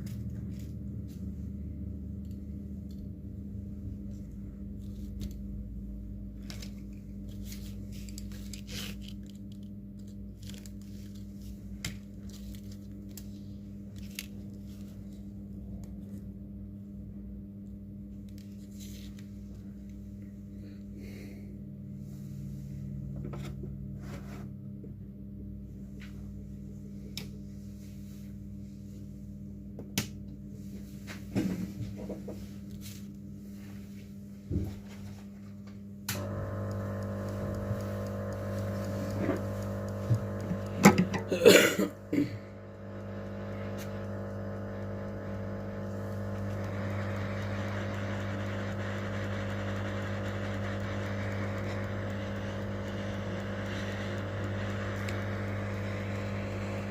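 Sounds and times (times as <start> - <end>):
electric equipment hum: 0.0 - 56.9
motor or blower: 36.1 - 56.9.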